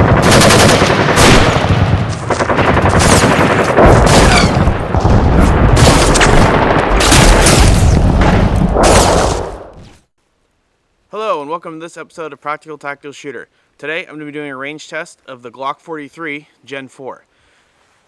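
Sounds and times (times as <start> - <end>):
automatic gunfire: 0.0 - 7.8.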